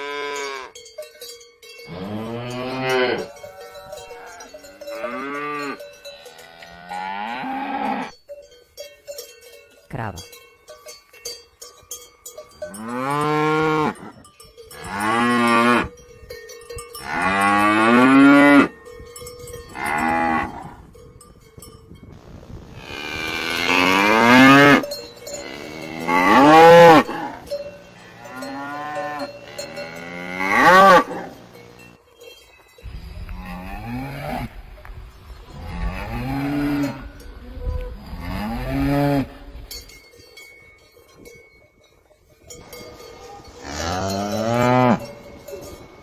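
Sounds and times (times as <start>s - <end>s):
cattle mooing: 1.9s - 8.1s, 22.8s - 31.4s, 33.1s - 34.5s, 35.6s - 39.6s.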